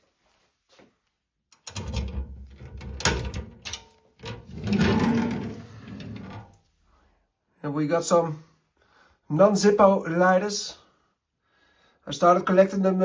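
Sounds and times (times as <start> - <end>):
display cabinet clattering open: 1.7 - 6.5.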